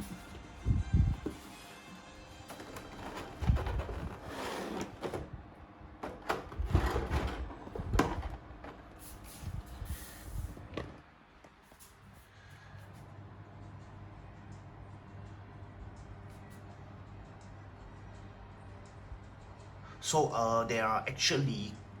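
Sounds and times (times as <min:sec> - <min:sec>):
cardboard packaging rustling: 0:02.3 - 0:05.4.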